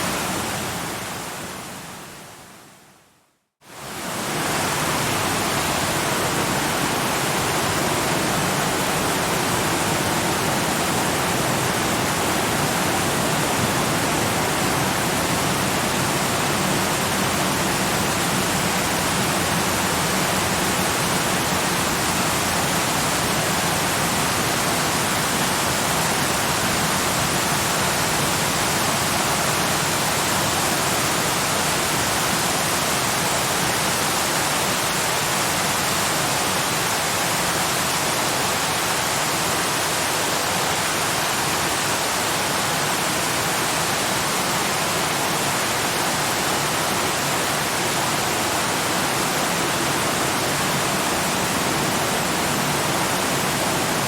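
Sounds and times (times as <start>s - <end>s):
waterfall rushing: 3.7s - 54.0s.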